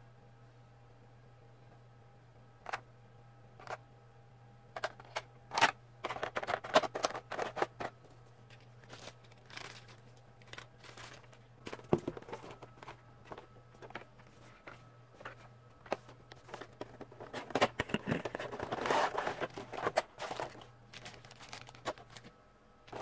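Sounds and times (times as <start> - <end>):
faint low hum: 0.0 - 23.0
plastic packaging crinkling: 8.5 - 14.2, 15.2 - 22.3.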